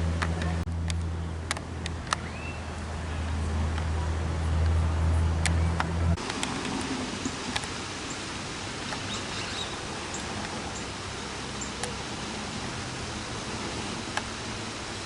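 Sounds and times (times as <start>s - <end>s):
steady rushing noise: 0.0s - 15.0s.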